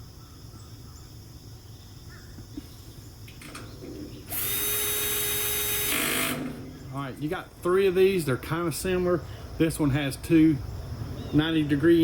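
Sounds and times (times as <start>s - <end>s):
cordless drill whining: 4.2s - 6.8s.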